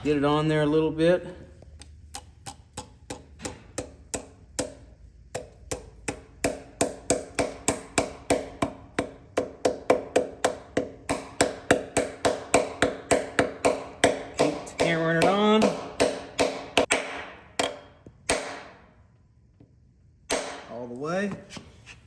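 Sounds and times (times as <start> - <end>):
hammer striking metal tool: 2.5 - 18.9, 20.3 - 20.7.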